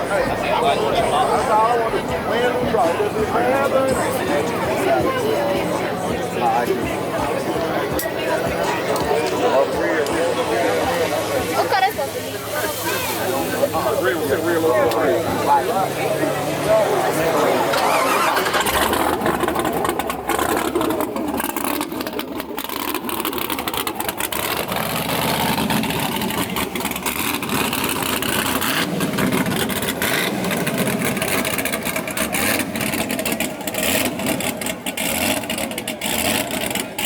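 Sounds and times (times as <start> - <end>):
race car engines running: 0.0 - 37.0.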